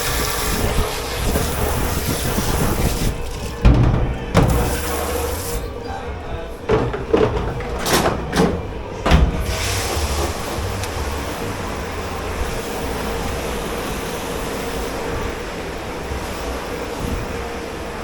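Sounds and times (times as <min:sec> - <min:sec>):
dishes knocking: 0:03.2 - 0:06.0, 0:06.6 - 0:11.6.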